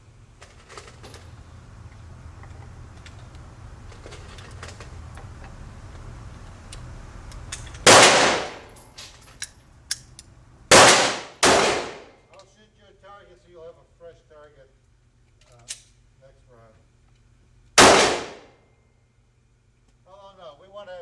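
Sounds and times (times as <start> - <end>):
steady low hum: 0.0 - 21.0
handgun shot: 7.8 - 8.7, 10.7 - 12.1, 17.8 - 18.5.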